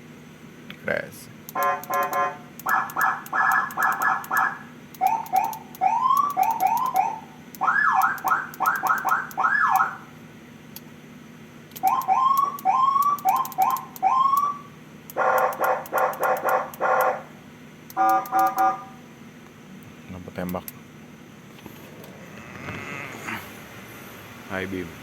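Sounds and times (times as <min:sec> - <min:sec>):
electronic car siren: 0:01.5 - 0:10.1, 0:11.8 - 0:17.3, 0:17.9 - 0:19.0.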